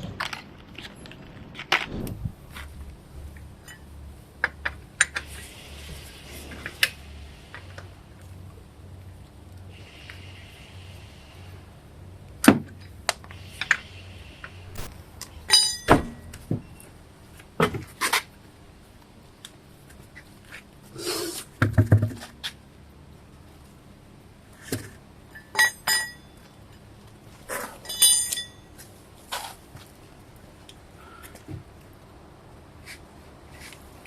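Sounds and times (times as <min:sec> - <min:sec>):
metallic tool clinks and knocks: 0:15.5 - 0:16.4.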